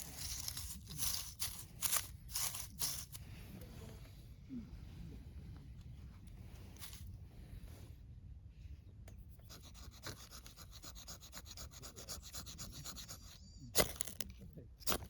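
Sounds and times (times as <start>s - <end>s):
quick scraping strokes: 0.0s - 3.2s.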